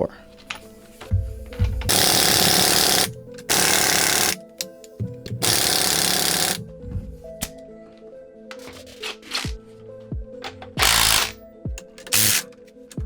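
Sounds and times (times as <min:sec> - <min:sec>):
background music: 0:00.0 - 0:13.0
power tool bursts: 0:01.9 - 0:04.5, 0:05.4 - 0:06.6, 0:10.8 - 0:11.4, 0:12.0 - 0:12.5.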